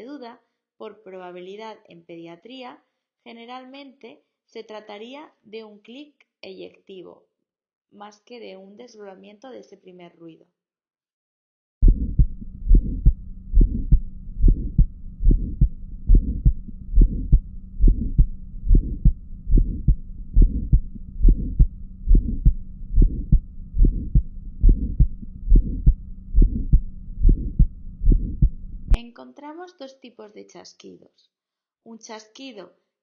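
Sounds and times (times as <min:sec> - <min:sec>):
faint steady hum: 0:11.8 - 0:29.0
heartbeat through stethoscope: 0:11.8 - 0:29.0.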